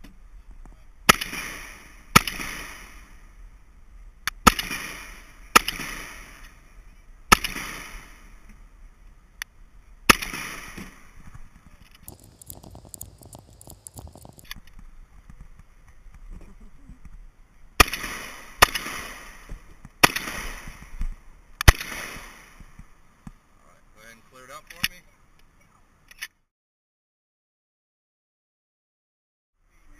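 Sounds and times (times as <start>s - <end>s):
shotgun shots: 1.1s - 3.0s, 7.3s - 8.1s, 10.1s - 11.0s, 17.8s - 19.4s, 20.0s - 20.8s, 21.6s - 22.5s
quick clicks: 12.0s - 14.6s.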